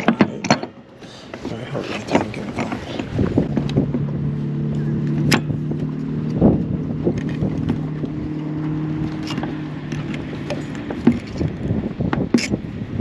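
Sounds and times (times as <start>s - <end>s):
motor hum: 2.0s - 13.0s.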